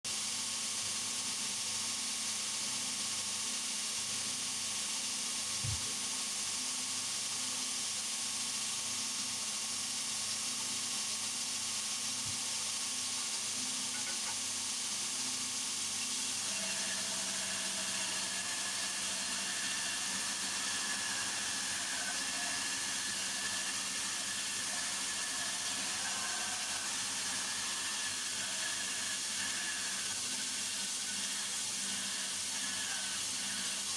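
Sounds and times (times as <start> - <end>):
power tool hissing: 15.8 - 33.9.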